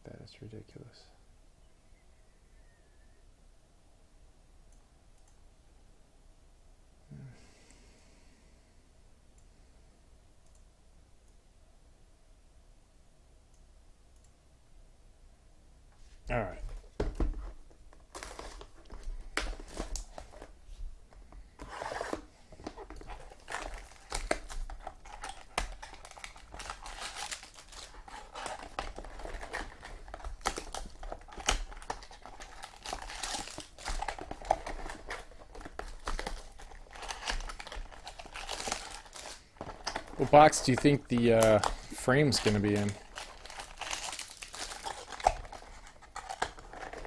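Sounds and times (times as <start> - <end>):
plastic wrapping crinkling and tearing: 18.0 - 20.5, 21.8 - 47.0.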